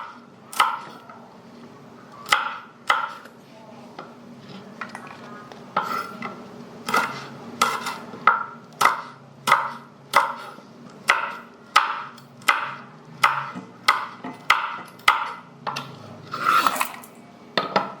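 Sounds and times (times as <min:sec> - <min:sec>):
knife slicing chili peppers: 0:06.8 - 0:08.1, 0:08.8 - 0:17.0.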